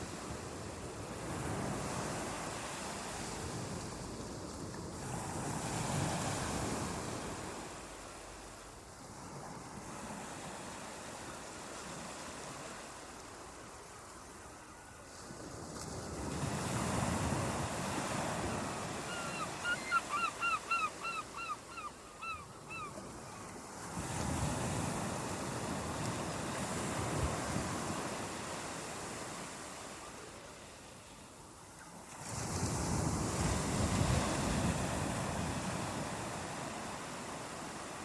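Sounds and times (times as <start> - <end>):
waves breaking on shore: 0.0 - 38.0.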